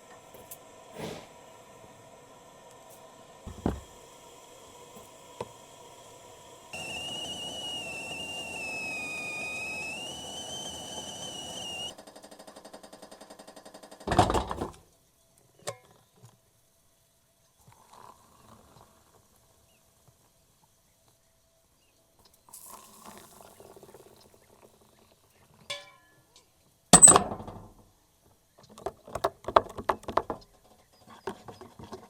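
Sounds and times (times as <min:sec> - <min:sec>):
kettle whistling: 0:01.0 - 0:12.0
loud thump: 0:03.5 - 0:04.0.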